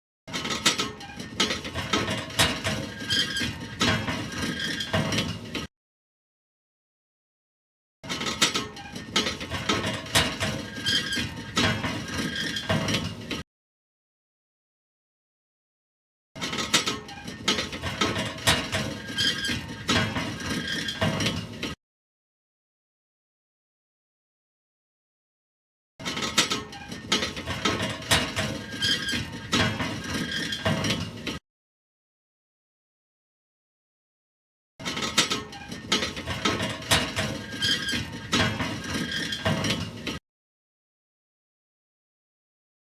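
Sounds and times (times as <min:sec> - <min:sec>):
mechanical clattering with clicks: 0:00.3 - 0:05.7, 0:26.0 - 0:31.4, 0:34.8 - 0:40.2.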